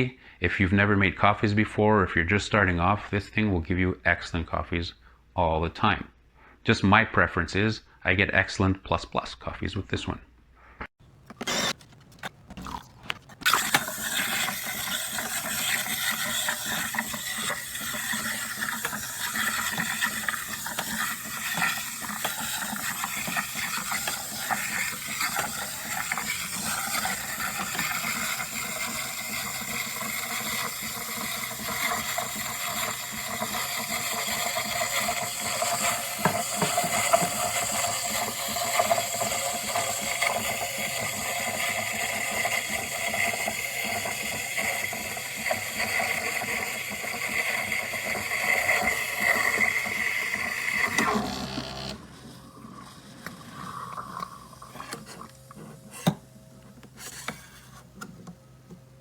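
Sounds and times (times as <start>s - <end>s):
espresso machine hissing: 11.3s - 11.8s, 12.7s - 56.3s.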